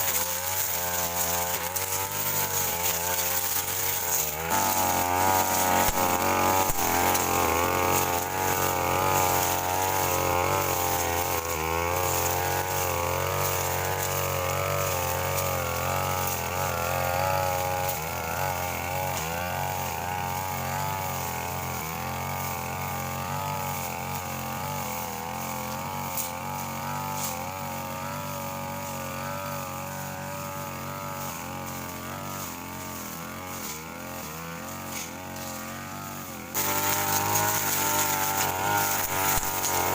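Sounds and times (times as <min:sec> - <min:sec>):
brush cutter engine cutting grass: 0:00.0 - 0:39.9.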